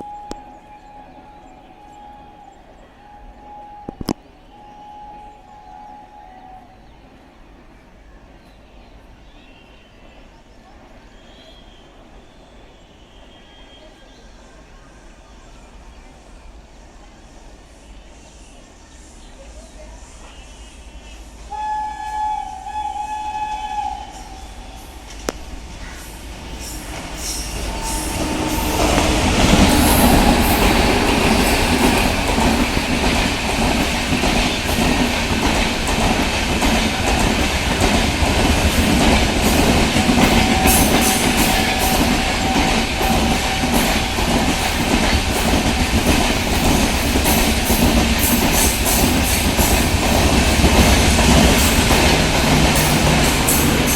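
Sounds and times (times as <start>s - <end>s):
train coaches rumbling: 0.0s - 53.9s
wheels clacking over rail joints: 25.0s - 53.9s.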